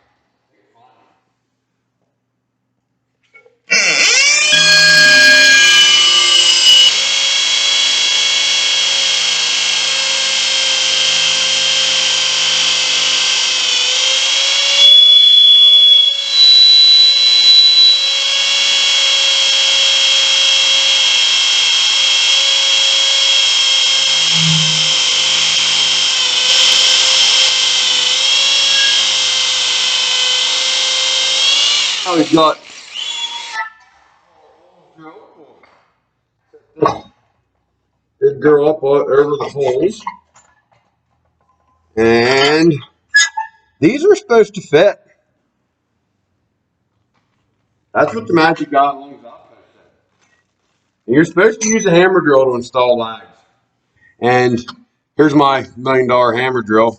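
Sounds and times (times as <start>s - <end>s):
hammer drill boring into concrete: 3.7s - 33.7s.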